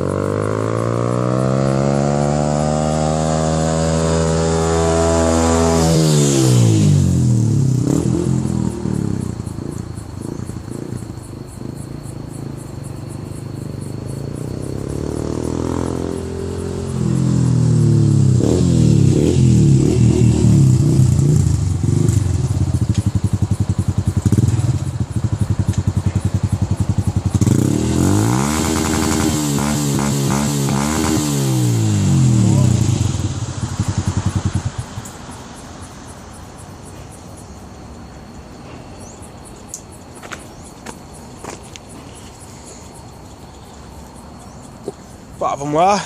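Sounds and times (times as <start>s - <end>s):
motorcycle riding by: 0.0s - 36.6s.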